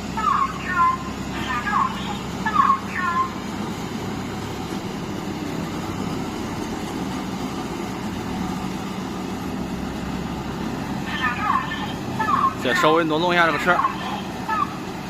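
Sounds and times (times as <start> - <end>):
harvester engine running: 0.0 - 15.0.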